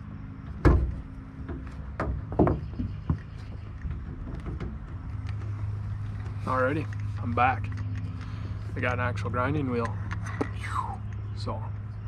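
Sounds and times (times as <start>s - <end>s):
low steady hum: 0.0s - 12.0s
sharp knocks: 0.6s - 3.3s.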